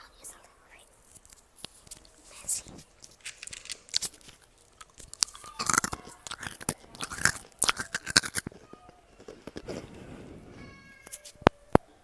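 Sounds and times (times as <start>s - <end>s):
crunchy food chewing: 1.1s - 10.1s.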